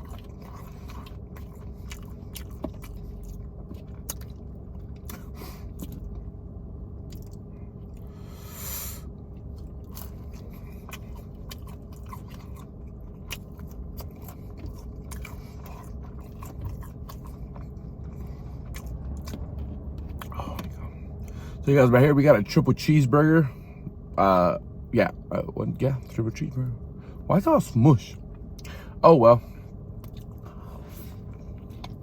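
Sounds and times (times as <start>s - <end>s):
chewing with wet clicks: 0.0s - 6.3s, 7.0s - 8.1s, 9.2s - 21.4s, 30.0s - 32.0s
faint hum: 0.0s - 32.0s.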